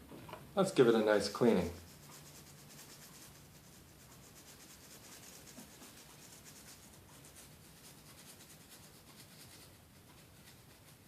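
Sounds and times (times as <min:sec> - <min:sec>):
rapid scrubbing on circuit board: 0:01.0 - 0:11.0.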